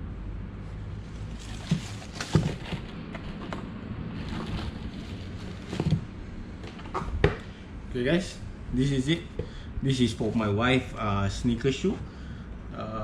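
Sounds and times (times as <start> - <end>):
low background hum: 0.0 - 13.0
packaging rustling: 1.3 - 3.6, 4.2 - 6.1.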